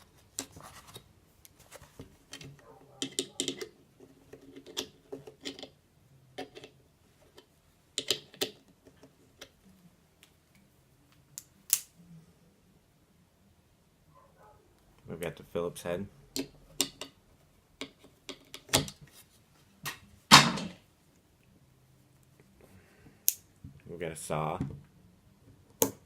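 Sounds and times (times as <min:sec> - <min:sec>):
multi-tool metal clicks and snaps: 0:11.1 - 0:12.0, 0:23.2 - 0:23.5, 0:25.8 - 0:26.0.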